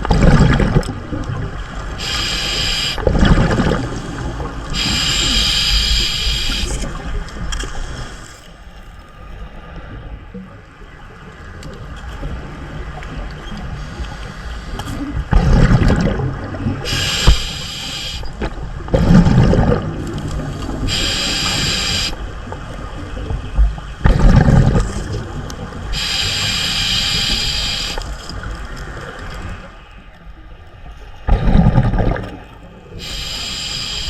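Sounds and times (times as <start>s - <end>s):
exhaled air bubbling underwater: 0.0s - 8.3s, 14.9s - 29.7s, 31.2s - 34.0s
regulator valve hissing: 2.0s - 3.0s, 4.0s - 6.9s, 16.9s - 18.4s, 20.9s - 22.2s, 25.9s - 28.1s, 33.0s - 34.0s.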